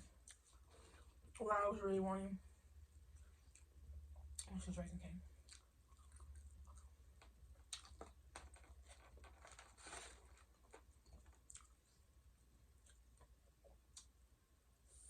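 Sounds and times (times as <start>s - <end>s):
close-up chewing: 5.4s - 12.1s
small crunches: 5.5s - 11.8s.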